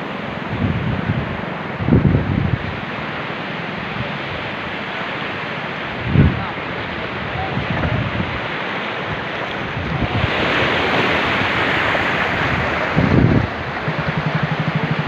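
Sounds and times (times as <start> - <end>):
waves washing onto beach: 0.0 - 15.0
wind buffeting microphone: 0.0 - 15.0
low pulsing hum: 12.6 - 15.0.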